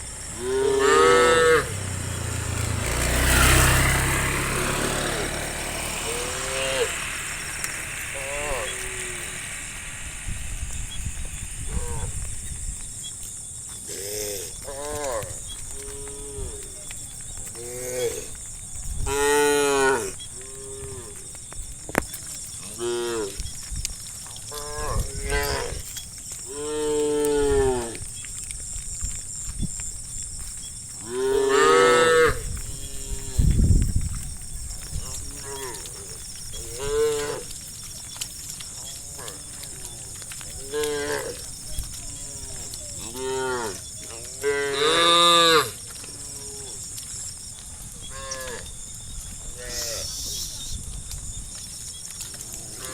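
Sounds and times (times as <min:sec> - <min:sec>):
cows mooing: 0:00.0 - 0:10.2, 0:13.9 - 0:16.7, 0:19.0 - 0:21.2, 0:22.6 - 0:23.4, 0:24.5 - 0:25.9, 0:26.5 - 0:28.0, 0:31.0 - 0:33.6, 0:35.0 - 0:37.7, 0:38.8 - 0:46.8.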